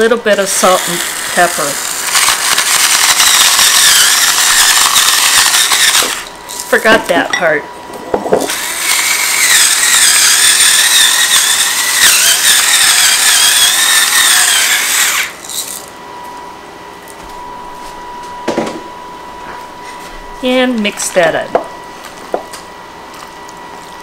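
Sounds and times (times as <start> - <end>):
electric grinder whining: 0.0 - 7.0, 8.5 - 15.9.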